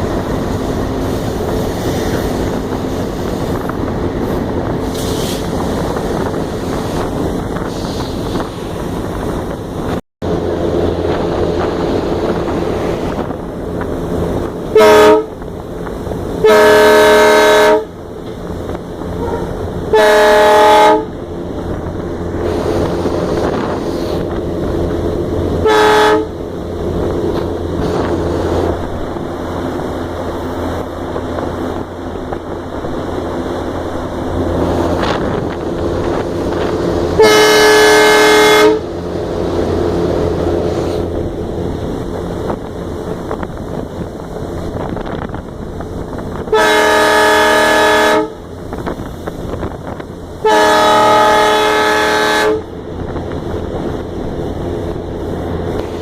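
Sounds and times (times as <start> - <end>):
locomotive engine and wheels running: 0.0 - 56.0
locomotive horn blasts: 14.7 - 15.4, 16.4 - 18.0, 19.1 - 21.2, 25.6 - 26.4, 37.1 - 38.9, 46.5 - 48.4, 50.4 - 52.7.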